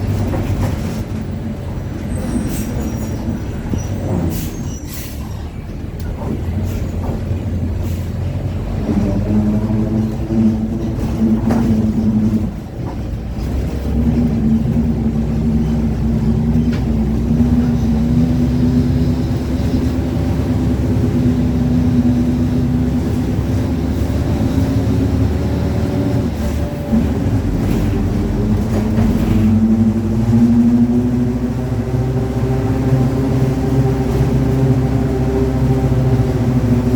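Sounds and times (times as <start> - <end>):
drivetrain rumble: 0.0 - 4.4, 5.4 - 36.9
bus differential growling: 0.0 - 36.9.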